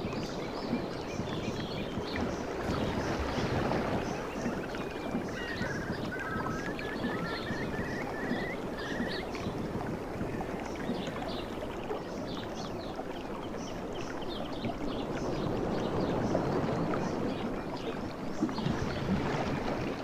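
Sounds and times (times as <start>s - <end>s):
surf washing on a beach: 0.0s - 12.3s.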